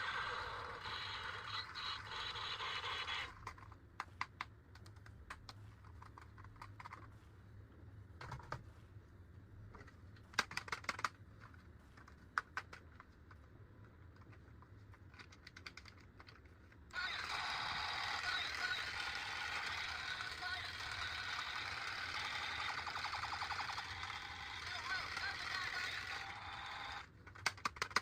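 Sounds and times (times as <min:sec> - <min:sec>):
hissy electronic sound: 0:00.0 - 0:03.3
plastic toy pieces clicking: 0:10.4 - 0:11.2, 0:15.1 - 0:16.4, 0:18.0 - 0:28.0.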